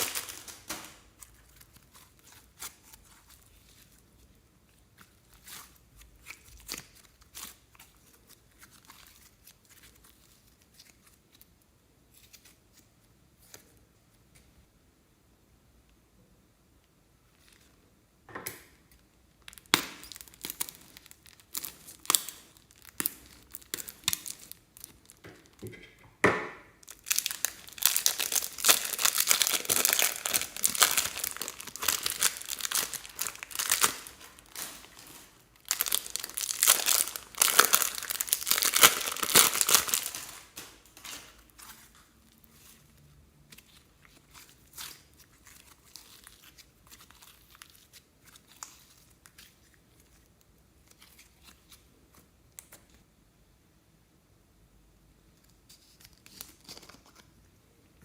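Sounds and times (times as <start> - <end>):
plastic bags crinkling: 0.0 - 11.2, 19.4 - 25.6, 26.8 - 43.0, 43.6 - 50.2.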